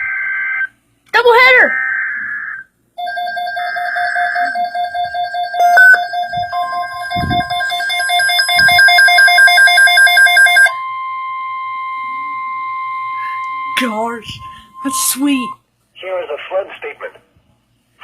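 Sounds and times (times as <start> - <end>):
pulsing ringing alert tone: 3.0 - 10.8
steady attention tone: 3.0 - 15.6.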